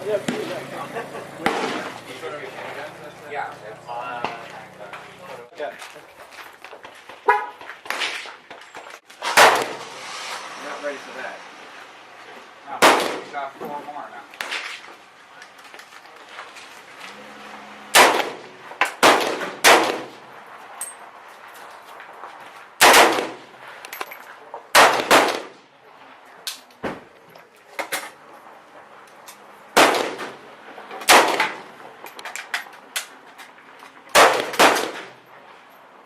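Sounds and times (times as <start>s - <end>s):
faint gunshots: 1.4s - 2.0s, 9.2s - 10.0s, 12.8s - 13.5s, 17.9s - 20.2s, 22.8s - 23.5s, 24.7s - 25.6s, 29.7s - 30.4s, 31.0s - 31.7s, 34.1s - 35.2s
loud close gunshots: 1.4s - 2.0s, 9.2s - 10.0s, 12.8s - 13.5s, 17.9s - 20.2s, 22.8s - 23.5s, 24.7s - 25.6s, 29.7s - 30.4s, 31.0s - 31.7s, 34.1s - 35.2s.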